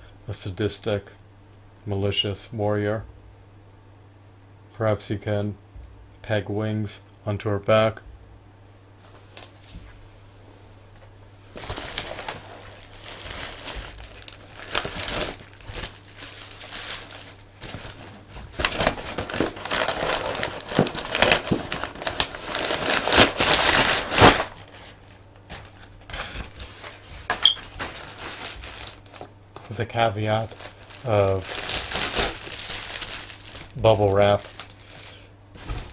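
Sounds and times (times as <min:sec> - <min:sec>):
plastic packing material crinkling: 0:11.5 - 0:35.9.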